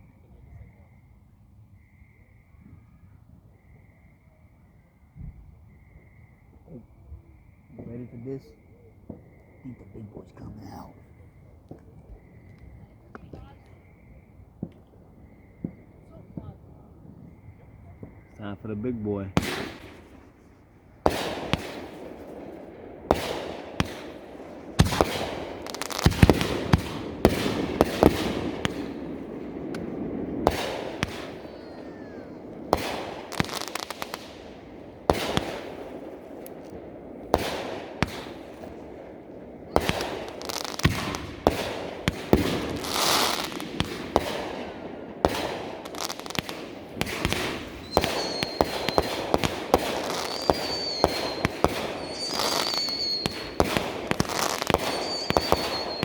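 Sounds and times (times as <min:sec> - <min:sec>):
firework bangs: 0:05.2 - 0:56.0
firework crackling: 0:14.6 - 0:56.0.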